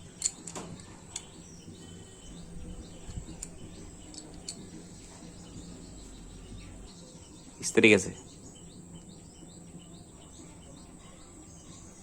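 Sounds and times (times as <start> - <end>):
faint bird chirps: 0.0 - 12.0
steady low hum: 0.0 - 12.0
light clicks: 3.0 - 4.8.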